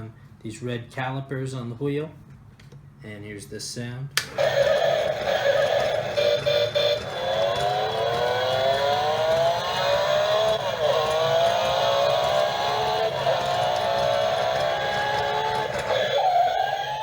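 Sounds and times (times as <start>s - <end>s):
alarm clock click: 4.2s - 16.2s
recorded engine revving: 4.3s - 17.0s.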